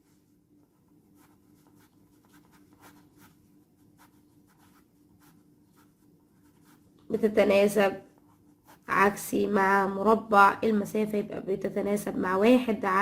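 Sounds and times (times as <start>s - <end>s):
faint steady hum: 0.0s - 13.0s
pen scratching while writing: 0.8s - 6.9s, 8.1s - 9.2s.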